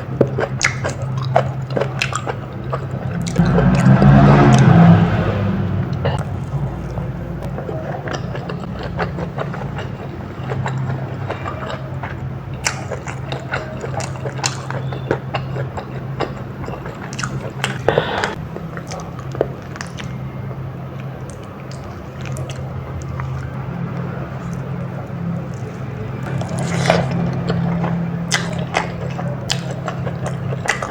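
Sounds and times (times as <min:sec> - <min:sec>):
close chewing and biting: 0:00.0 - 0:04.8, 0:06.2 - 0:30.9
steady low hum: 0:00.0 - 0:30.9
wet mouth clicks and smacks: 0:00.4 - 0:03.4.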